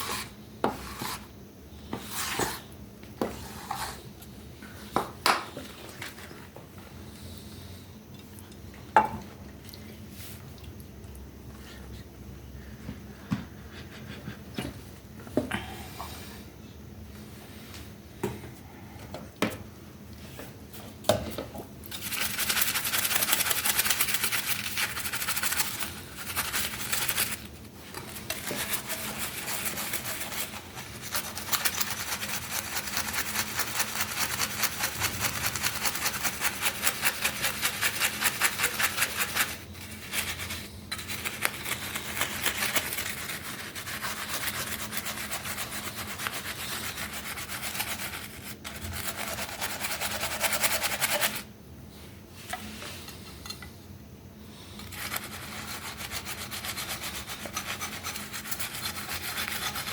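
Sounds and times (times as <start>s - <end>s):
hand sanding strokes: 22.0s - 51.4s, 54.8s - 59.9s.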